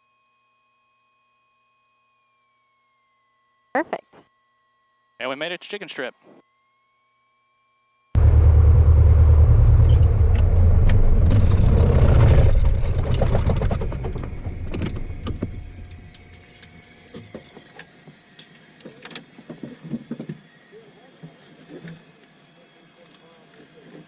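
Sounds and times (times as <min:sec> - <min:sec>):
airplane engine idling: 0:08.2 - 0:16.2
propeller winding down: 0:08.2 - 0:16.4
clicks and rattles: 0:11.3 - 0:16.5.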